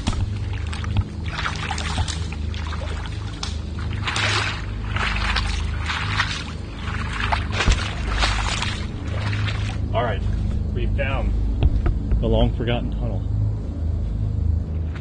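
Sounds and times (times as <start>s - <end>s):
feet sloshing in water: 0.0s - 10.7s
steady low rumble: 0.0s - 15.0s.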